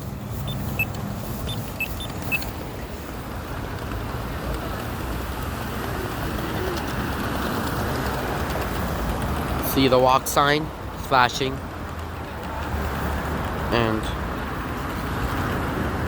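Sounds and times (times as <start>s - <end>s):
crosswalk button beeps: 0.0s - 2.5s
street traffic noise: 0.0s - 16.0s.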